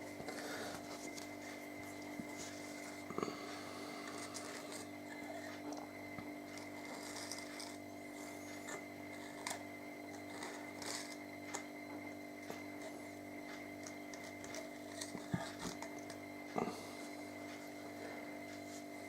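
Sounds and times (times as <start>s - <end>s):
electrical hum: 0.0s - 19.0s.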